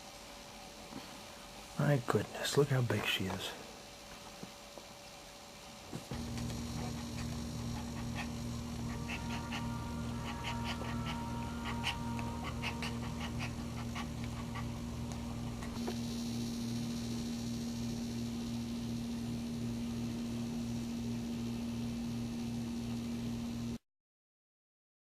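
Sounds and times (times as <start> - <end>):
low hum: 6.0 - 23.8
dog panting: 6.1 - 15.8.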